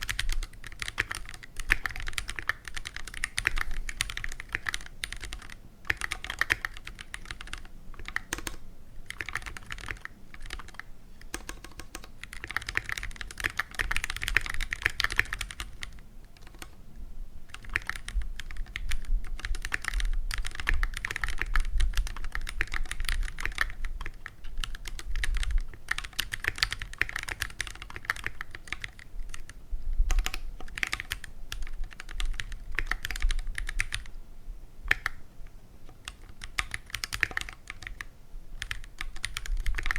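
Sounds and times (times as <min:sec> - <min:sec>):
fast typing on mechanical keyboard: 0:00.0 - 0:16.8, 0:17.5 - 0:34.2, 0:34.9 - 0:35.2, 0:36.0 - 0:39.9.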